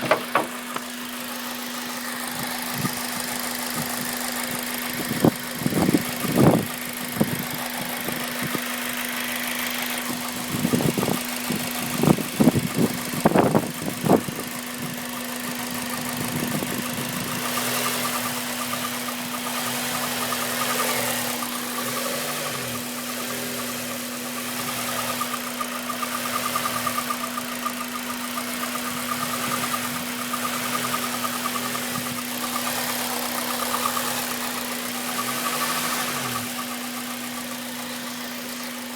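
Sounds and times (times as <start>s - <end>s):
loud sharp knocks: 0.0s - 0.9s
car engine running: 0.0s - 38.9s
pulsing engine rattle: 0.0s - 38.9s.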